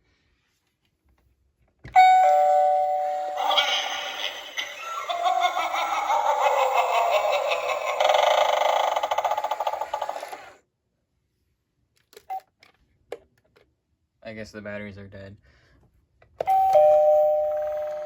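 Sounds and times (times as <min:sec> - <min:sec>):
warbling electronic doorbell tune: 0:02.0 - 0:06.0, 0:16.5 - 0:18.0.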